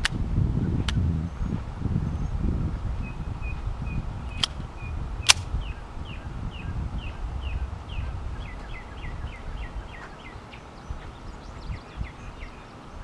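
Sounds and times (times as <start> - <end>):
bird chirping: 3.0 - 13.0.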